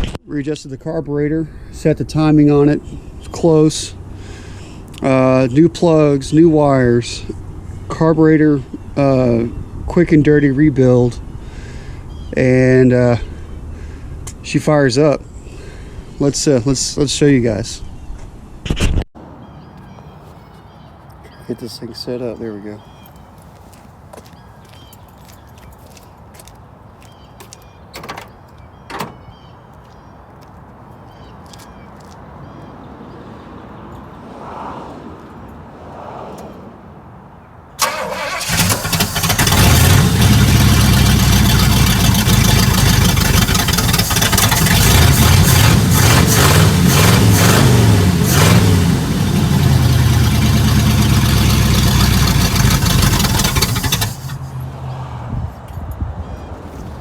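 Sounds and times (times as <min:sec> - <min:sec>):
car engine starting and revving: 0:37.8 - 0:55.3.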